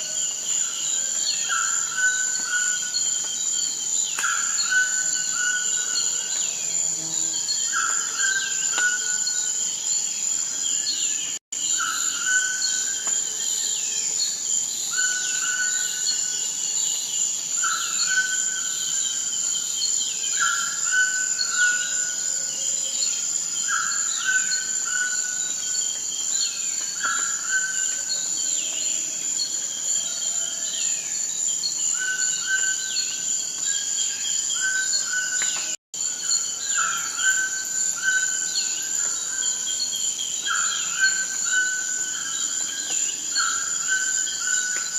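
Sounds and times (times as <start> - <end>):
high-pitched insect trill: 0.0 - 44.9.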